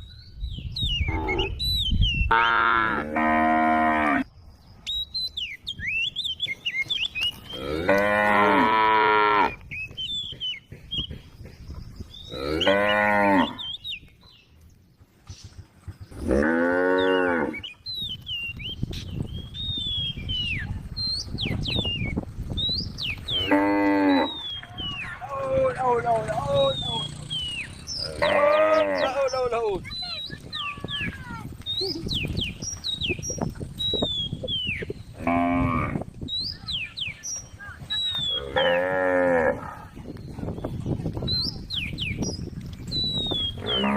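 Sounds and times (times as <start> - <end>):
cow mooing: 2.3 - 4.2, 7.6 - 9.6, 12.3 - 13.6, 16.2 - 17.6, 23.3 - 24.4, 28.0 - 29.2, 38.4 - 39.9, 43.6 - 43.9.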